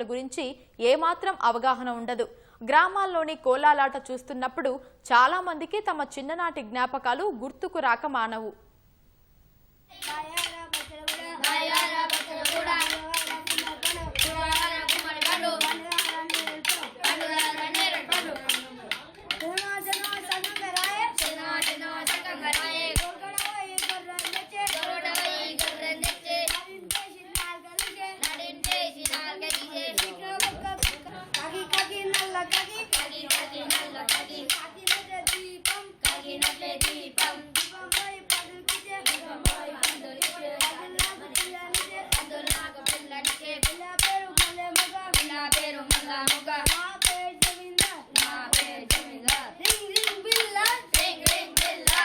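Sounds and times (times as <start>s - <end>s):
rhythmic claps of hands and sticks: 10.0s - 52.0s
children singing in unison: 11.0s - 18.5s, 19.6s - 46.8s, 47.8s - 52.0s.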